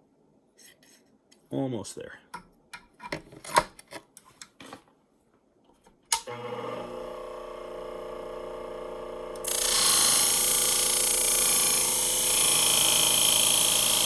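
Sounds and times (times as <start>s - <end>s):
blade grinding on wheel: 9.4s - 14.0s.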